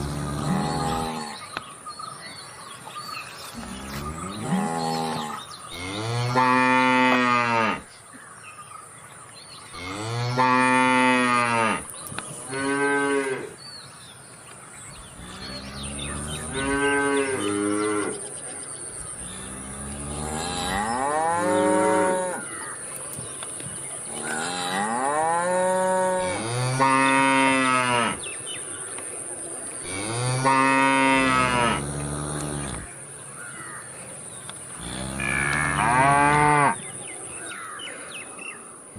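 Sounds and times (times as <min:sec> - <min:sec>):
cattle mooing: 0:00.0 - 0:01.4, 0:19.3 - 0:22.4, 0:29.9 - 0:32.9, 0:34.8 - 0:36.8.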